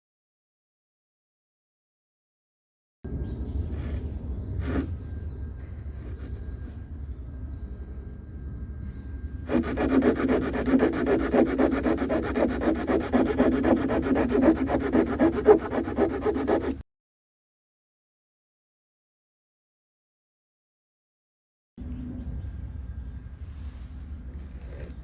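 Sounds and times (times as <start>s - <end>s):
hand saw cutting wood: 9.5s - 16.8s.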